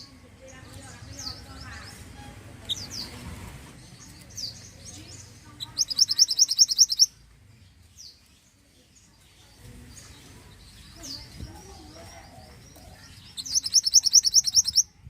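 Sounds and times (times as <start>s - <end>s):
songbird chirps: 0.0s - 15.0s
fast songbird trill: 5.6s - 7.1s, 13.2s - 14.9s.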